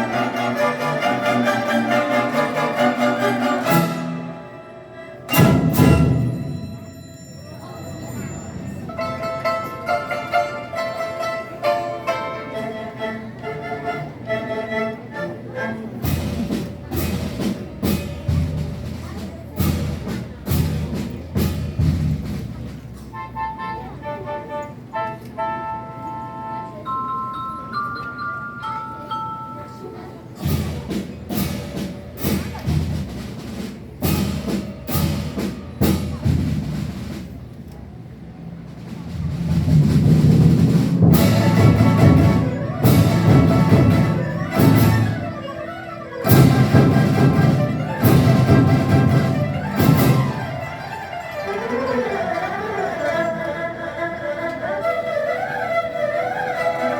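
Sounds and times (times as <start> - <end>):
traditional orchestra melody: 0.0 - 56.9
drum and cymbal strikes: 5.3 - 7.1, 16.0 - 23.2, 30.3 - 45.4, 46.2 - 50.9.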